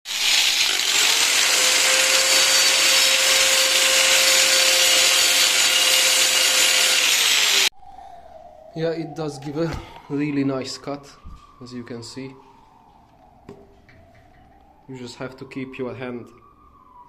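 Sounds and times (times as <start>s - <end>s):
angle grinder cutting laminate: 0.1s - 7.7s
grinder motor whine: 0.1s - 7.7s.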